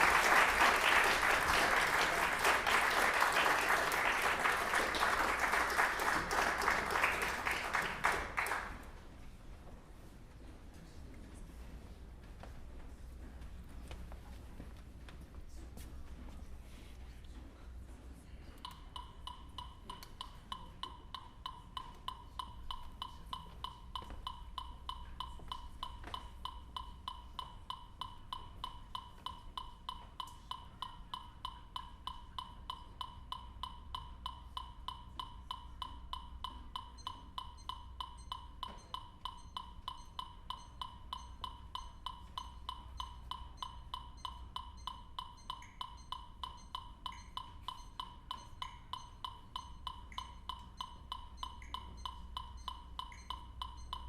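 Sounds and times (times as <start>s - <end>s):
faint low hum: 0.0s - 54.0s
short electronic beeps: 36.8s - 54.0s.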